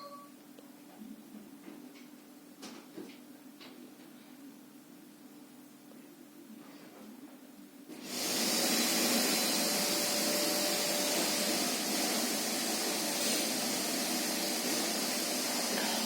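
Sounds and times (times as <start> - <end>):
vacuum cleaner running: 7.9 - 16.0.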